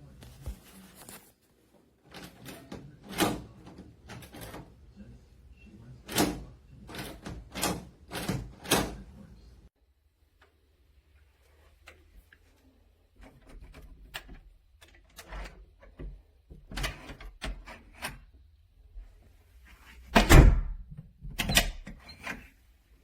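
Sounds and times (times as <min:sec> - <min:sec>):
door latch clicks and rattles: 0:06.1 - 0:09.0, 0:20.2 - 0:22.4
door thudding: 0:20.2 - 0:21.8.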